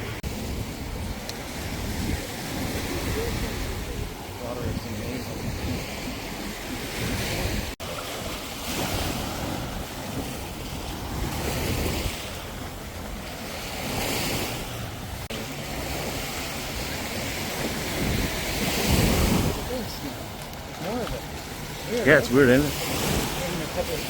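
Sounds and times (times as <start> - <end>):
surf washing onto beach: 0.0 - 24.0
wind rumbling on microphone: 0.0 - 24.0.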